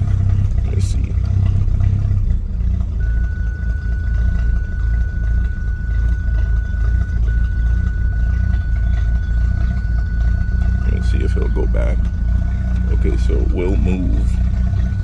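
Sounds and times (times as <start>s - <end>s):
car engine idling unevenly: 0.0s - 15.0s
thin steady high tone: 3.0s - 15.0s.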